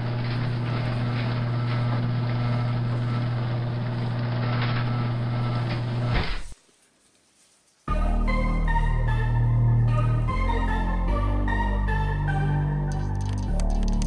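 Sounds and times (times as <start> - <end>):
microwave oven humming: 0.0 - 6.5.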